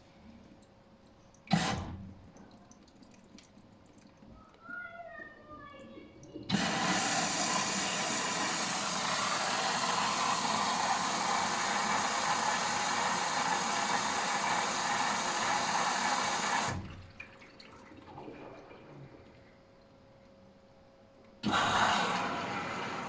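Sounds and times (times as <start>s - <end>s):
water rushing into washing machine: 1.5s - 3.5s, 6.4s - 19.6s, 21.4s - 23.0s.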